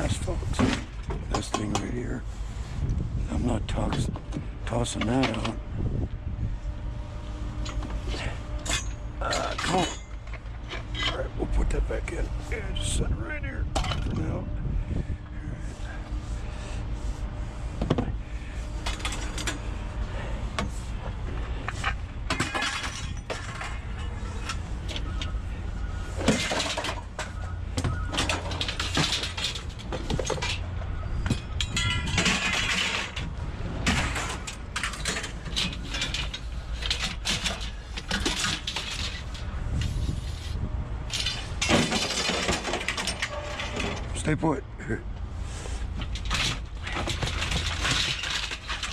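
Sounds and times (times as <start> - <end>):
metal clanks and scraping: 0.0 - 44.5, 45.2 - 48.9
steady low rumble: 0.0 - 48.9
ringing metallic hits: 31.2 - 33.1.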